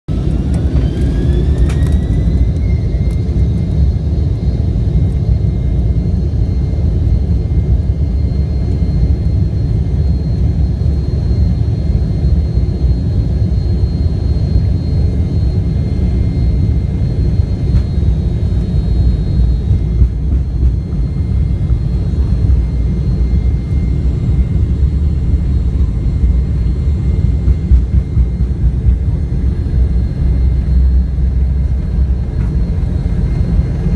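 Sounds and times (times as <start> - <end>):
jet engines whining: 0.1 - 33.9.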